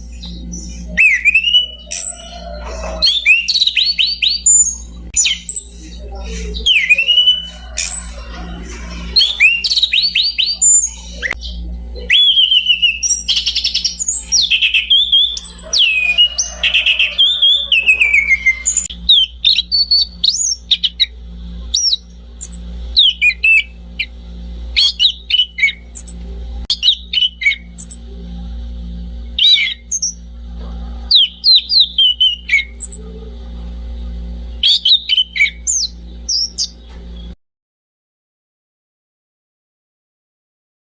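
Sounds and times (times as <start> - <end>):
steady low hum: 0.0 - 37.4
thrush singing whistled phrases: 0.5 - 5.7, 6.6 - 21.1, 21.8 - 24.1, 24.8 - 26.1, 31.1 - 33.0.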